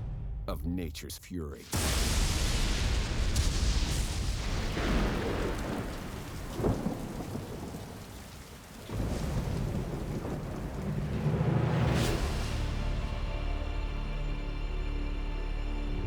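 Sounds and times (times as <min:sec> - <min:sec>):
sharp thunder crack: 0:01.7 - 0:08.2, 0:08.8 - 0:11.0
heavy rain: 0:01.7 - 0:13.1
rolling thunder: 0:01.9 - 0:12.0.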